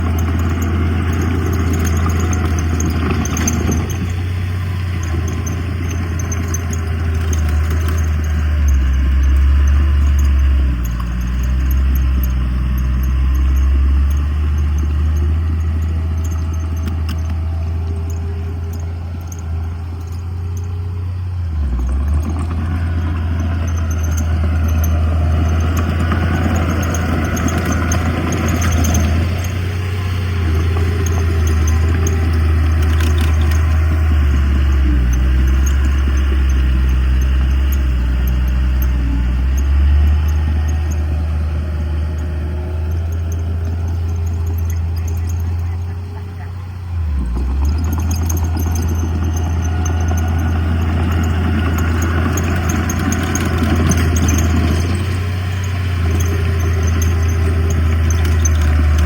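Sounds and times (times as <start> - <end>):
heavy diesel machinery running: 0.0 - 59.0
metallic clatter and scraping: 0.0 - 59.0.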